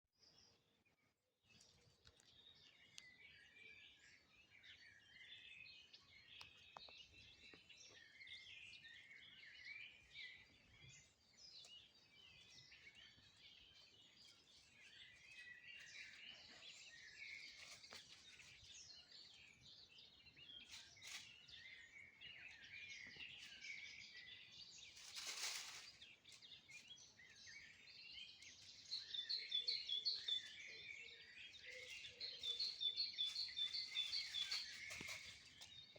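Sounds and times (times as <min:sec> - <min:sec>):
small birds chirping: 0:00.2 - 0:35.9.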